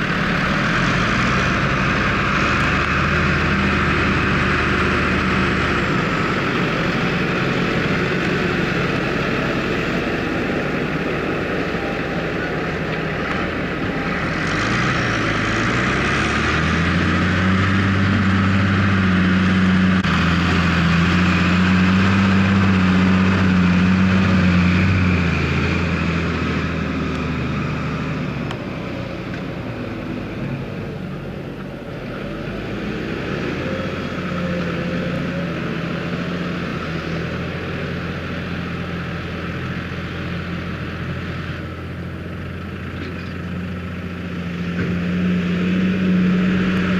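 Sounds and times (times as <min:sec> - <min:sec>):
harvester mechanical rattle: 0:00.0 - 0:24.2
tractor diesel engine hum: 0:00.0 - 0:46.9.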